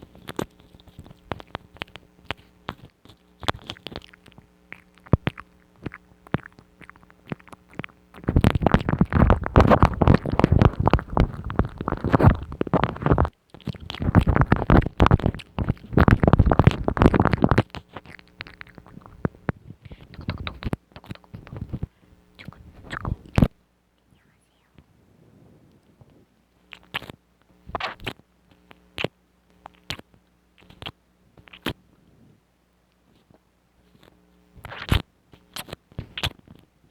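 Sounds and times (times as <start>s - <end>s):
wet mouth clicks and smacks: 0.1s - 23.6s, 26.7s - 31.8s.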